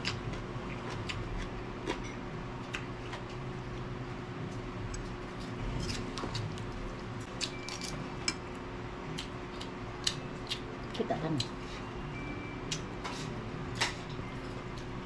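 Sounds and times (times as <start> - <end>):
steady low hum: 0.0 - 15.0
chewing crunchy vegetables: 9.1 - 11.6.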